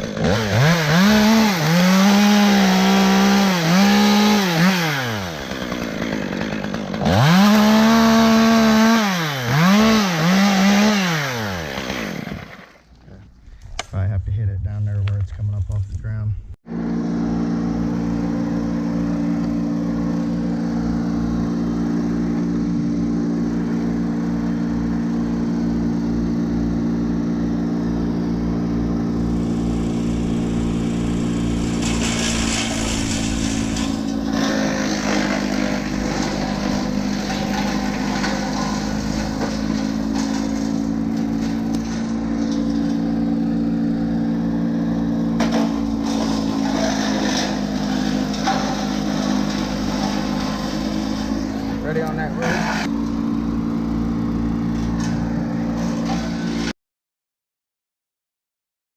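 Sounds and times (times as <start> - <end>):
engine running steadily: 14.9 - 56.7.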